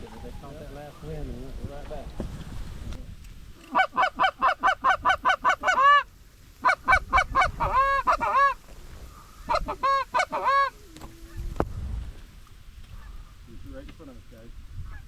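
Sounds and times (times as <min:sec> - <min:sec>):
goose honking and clucking: 0:03.6 - 0:11.6.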